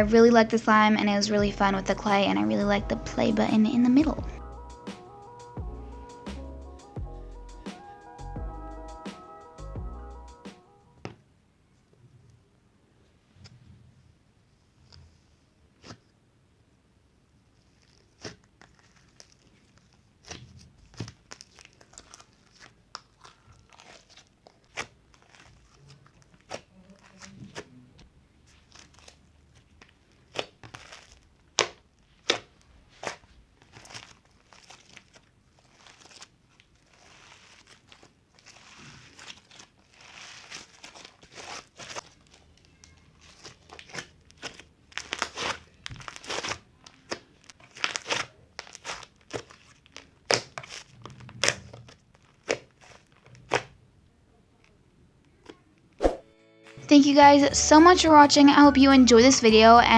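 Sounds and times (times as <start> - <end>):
crinkly crackling: 17.5 - 56.0
slime squishing and popping: 38.5 - 53.8.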